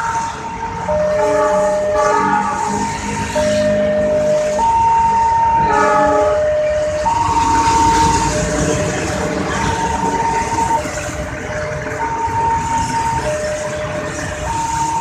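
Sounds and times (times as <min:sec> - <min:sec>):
passing train rumbling: 0:00.0 - 0:15.0
level crossing alarm high low tone: 0:00.8 - 0:15.0.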